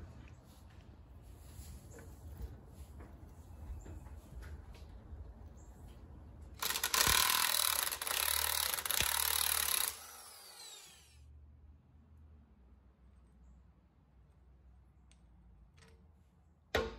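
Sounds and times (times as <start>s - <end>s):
power tool whining: 6.6s - 11.2s.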